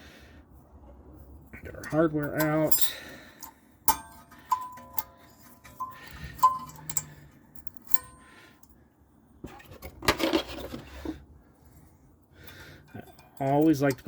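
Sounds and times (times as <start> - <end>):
metal scraping and rattling: 1.6 - 8.4, 12.4 - 14.0
metallic clinks: 1.8 - 8.8, 12.4 - 14.0.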